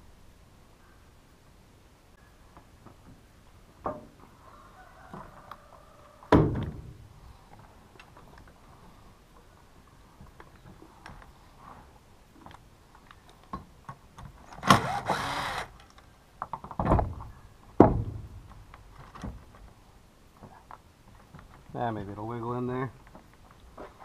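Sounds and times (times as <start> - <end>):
heavy knocks: 17.8 - 18.3.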